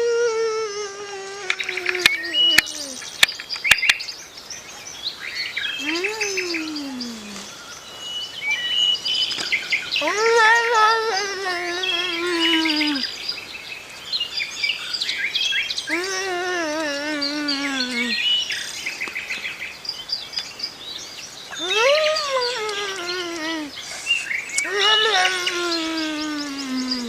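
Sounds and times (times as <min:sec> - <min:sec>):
wavering descending bird call: 0:00.0 - 0:03.1, 0:05.7 - 0:07.6, 0:10.0 - 0:13.1, 0:15.8 - 0:18.6, 0:21.5 - 0:27.0
birds chirping rapidly: 0:01.4 - 0:27.0.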